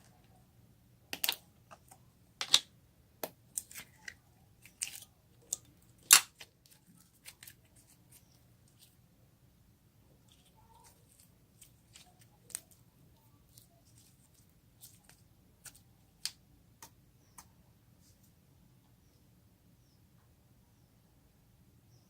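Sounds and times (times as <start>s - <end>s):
slime squishing with pops and crackles: 1.1s - 8.9s, 10.2s - 17.5s.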